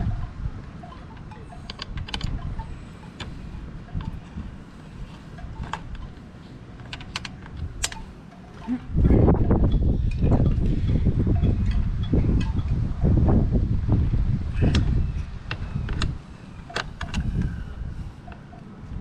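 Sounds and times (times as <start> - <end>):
steady low rumble: 0.0 - 19.0
hand tools clicking on bolts: 0.8 - 8.8, 15.5 - 17.5.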